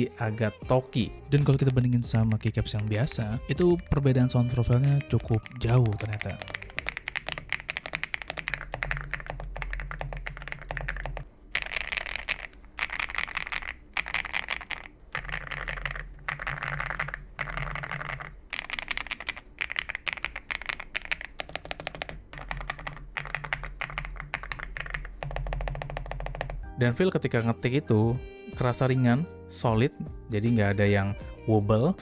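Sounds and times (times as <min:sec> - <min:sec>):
mechanical keyboard typing: 0:01.4 - 0:26.6.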